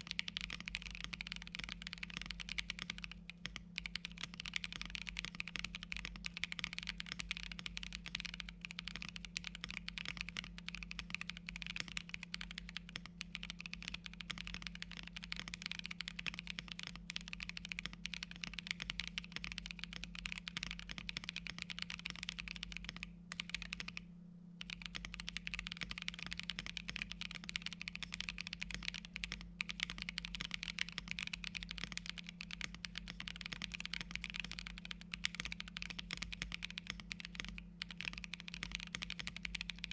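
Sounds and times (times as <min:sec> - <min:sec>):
mechanical keyboard typing: 0:00.0 - 0:24.0, 0:24.6 - 0:39.9.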